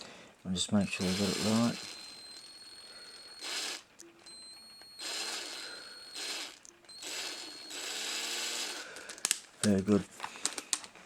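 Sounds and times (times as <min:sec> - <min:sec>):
small drill whirring: 0:00.7 - 0:09.2.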